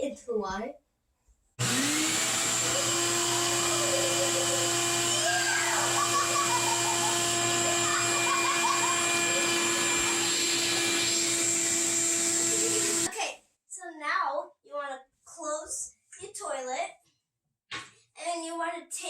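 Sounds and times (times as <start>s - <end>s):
wet-dry vacuum whining: 1.6s - 13.1s.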